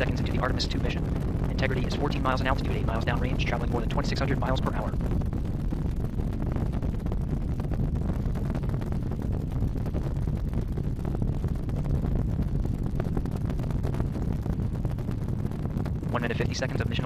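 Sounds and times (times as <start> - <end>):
rocket engines rumbling: 0.0 - 17.0.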